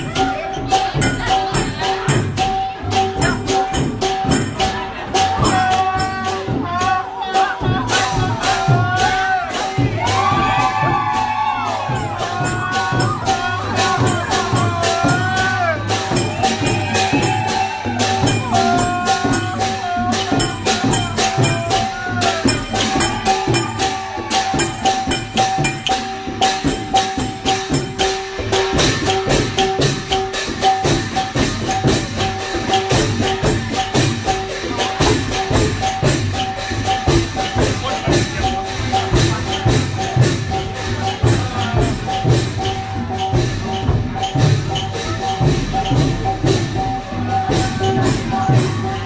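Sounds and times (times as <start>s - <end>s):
rapid shaker percussion: 0.0s - 49.0s.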